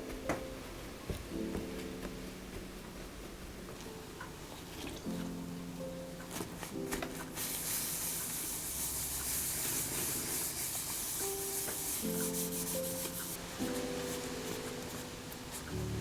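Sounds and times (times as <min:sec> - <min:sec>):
soft background music: 0:00.0 - 0:16.0
wax rubbing on leather: 0:07.4 - 0:15.7.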